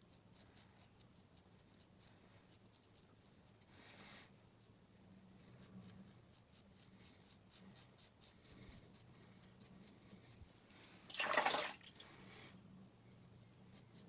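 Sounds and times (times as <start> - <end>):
razor scraping stubble: 5.3 - 10.4
rush of tap water: 11.1 - 12.0.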